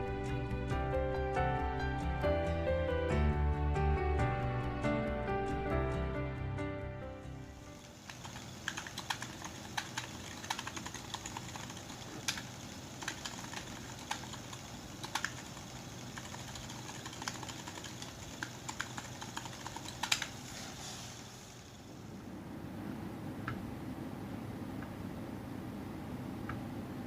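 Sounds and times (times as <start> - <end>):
typing on mechanical keyboard: 8.0 - 20.4.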